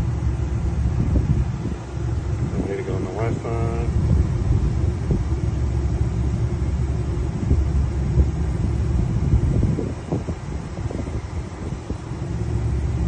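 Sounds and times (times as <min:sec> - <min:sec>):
low uneven rumble: 0:00.0 - 0:13.0.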